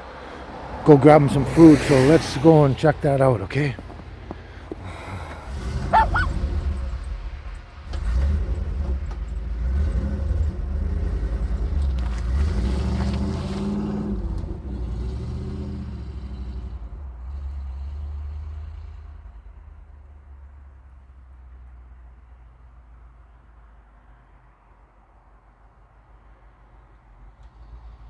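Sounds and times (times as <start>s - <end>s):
truck engine revving: 0.8s - 19.7s.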